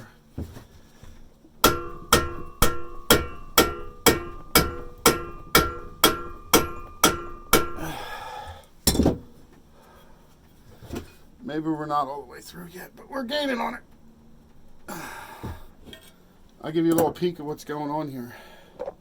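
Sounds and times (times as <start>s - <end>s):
hammer blows on steel: 1.6s - 8.2s.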